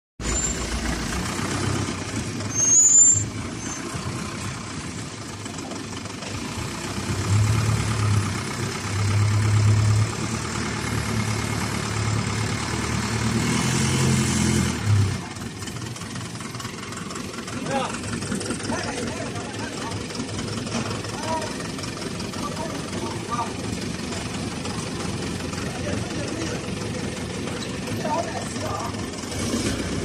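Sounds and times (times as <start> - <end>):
brief high squeal: 0.2 - 0.8, 2.4 - 4.0
heavy diesel engine running: 0.2 - 30.0.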